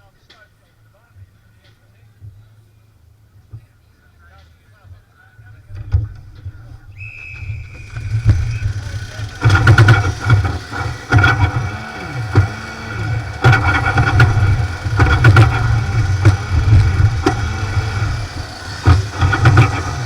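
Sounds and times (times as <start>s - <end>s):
kart engine revving: 6.9s - 20.0s
sharp engine cracks: 7.0s - 20.0s.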